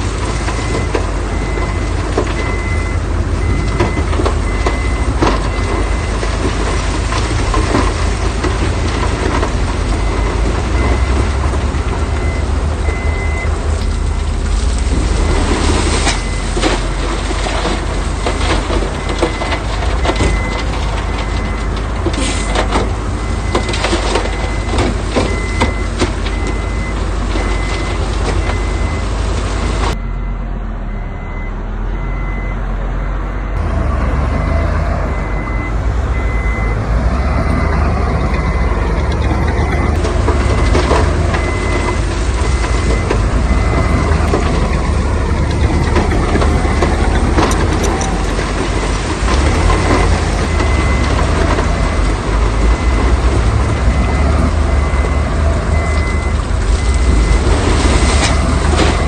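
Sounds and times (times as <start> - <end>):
diesel machinery running: 0.0 - 59.0
reversing alarm beeping: 0.4 - 59.0.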